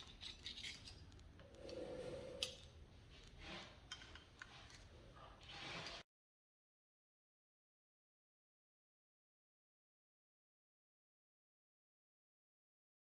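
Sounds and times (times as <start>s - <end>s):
metal parts clicking and rubbing: 0.0s - 1.2s.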